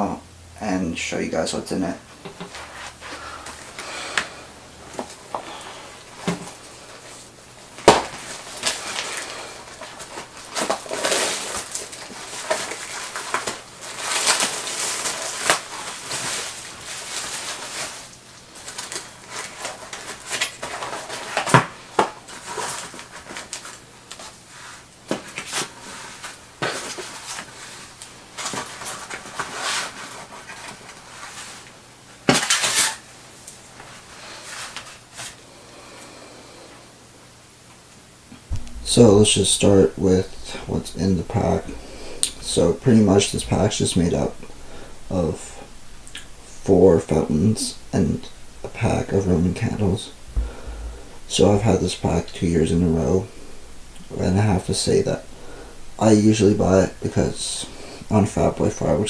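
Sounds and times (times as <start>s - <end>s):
packaging rustling and crinkling: 7.8s - 35.4s, 38.4s - 58.8s.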